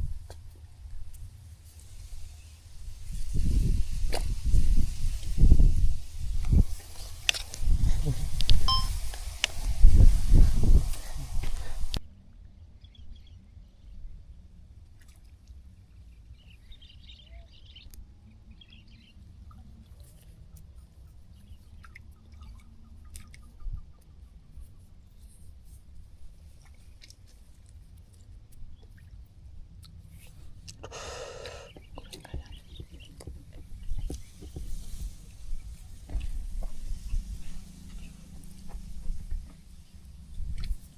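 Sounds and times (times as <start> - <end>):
faint bird chirps: 16.4 - 17.9.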